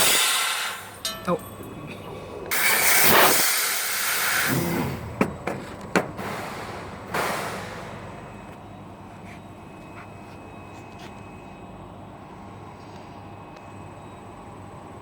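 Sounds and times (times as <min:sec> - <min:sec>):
laser cutter gas hissing: 0:00.0 - 0:01.0, 0:02.5 - 0:05.2.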